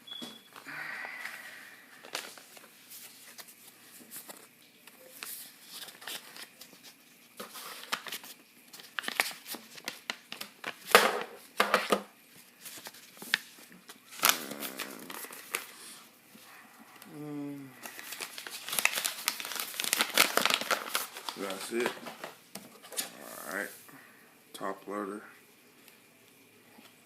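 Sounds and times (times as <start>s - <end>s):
paper crinkling and tearing: 2.0s - 10.9s, 12.4s - 16.0s, 17.8s - 23.2s.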